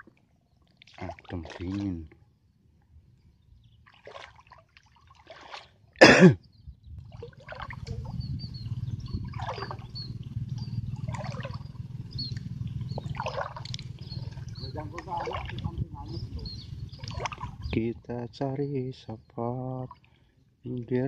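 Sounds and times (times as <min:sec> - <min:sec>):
footsteps squelching through mud: 0:03.8 - 0:05.8, 0:09.2 - 0:10.2, 0:11.0 - 0:11.6, 0:12.2 - 0:15.8, 0:16.8 - 0:17.6
low rumble: 0:06.7 - 0:18.4.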